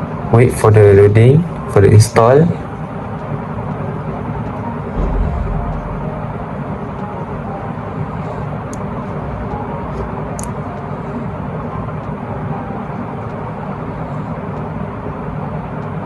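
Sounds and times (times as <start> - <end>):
steady rumbling background noise: 4.0 - 14.6.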